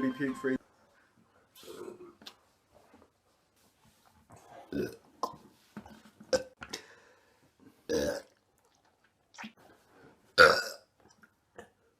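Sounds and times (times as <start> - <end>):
person belching: 7.9 - 8.3, 10.4 - 10.8.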